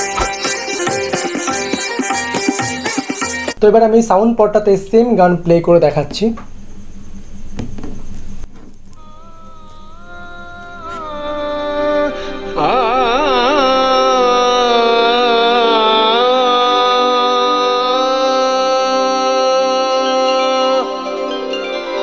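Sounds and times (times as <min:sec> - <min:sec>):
steady drone: 0:03.6 - 0:16.4
person singing with vibrato: 0:09.0 - 0:22.0.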